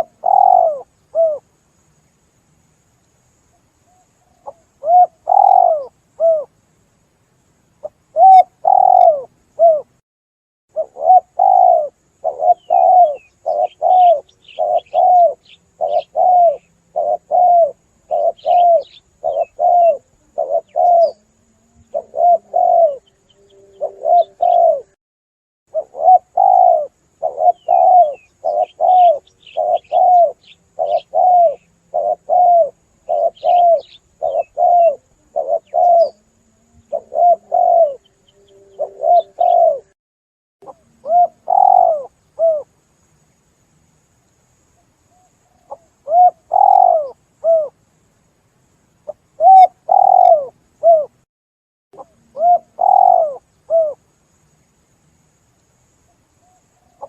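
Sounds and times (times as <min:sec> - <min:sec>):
dove cooing: 0:00.0 - 0:01.4, 0:03.9 - 0:06.5, 0:07.8 - 0:09.9, 0:10.7 - 0:25.0, 0:25.7 - 0:40.0, 0:40.6 - 0:42.7, 0:45.1 - 0:47.8, 0:49.1 - 0:51.2, 0:52.0 - 0:54.0
faint high chirps: 0:25.7 - 0:40.0.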